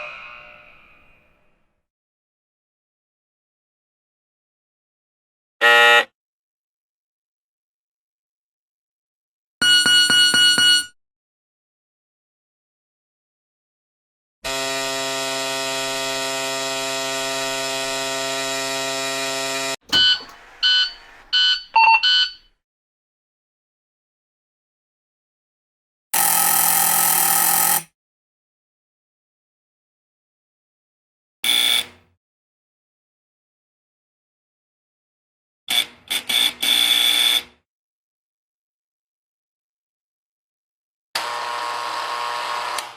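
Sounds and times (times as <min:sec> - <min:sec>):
buzzer short blasts: 0:05.6 - 0:06.1, 0:09.6 - 0:11.0, 0:19.9 - 0:22.4, 0:26.2 - 0:27.9
electric buzzer long harsh buzz: 0:14.5 - 0:21.5, 0:26.2 - 0:27.9.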